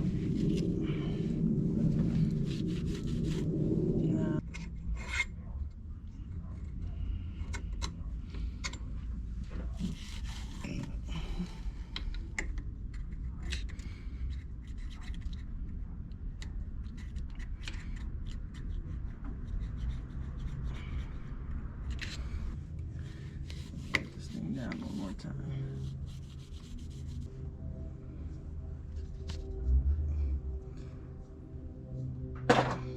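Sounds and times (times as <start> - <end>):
hands scratching and rubbing: 0.0 - 4.2, 9.6 - 12.2, 12.9 - 27.3
steady low hum: 0.0 - 32.9.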